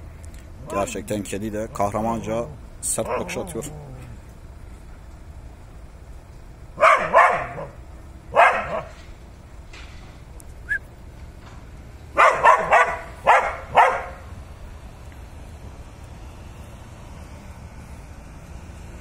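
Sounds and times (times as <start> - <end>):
dog barking: 3.0 - 3.4, 6.8 - 9.0, 12.2 - 14.3.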